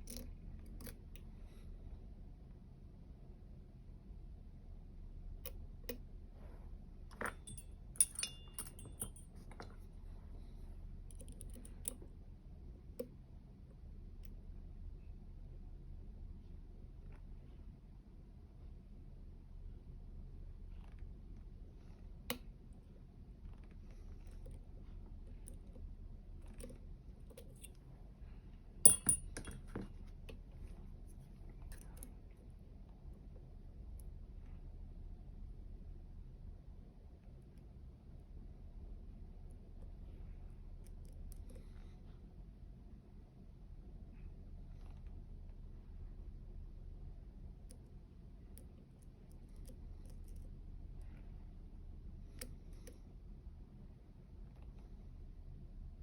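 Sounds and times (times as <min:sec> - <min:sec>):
low steady hum: 0:00.0 - 0:56.0
lock pick metal clicks: 0:07.1 - 0:09.2, 0:28.9 - 0:29.8
lock pick clicking in lock: 0:28.9 - 0:29.7.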